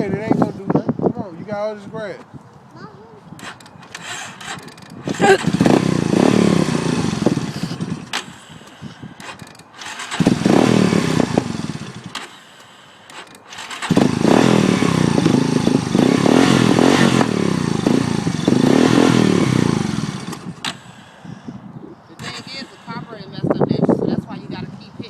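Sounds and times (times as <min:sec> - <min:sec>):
atv engine revving: 0:03.4 - 0:21.4, 0:22.1 - 0:23.5.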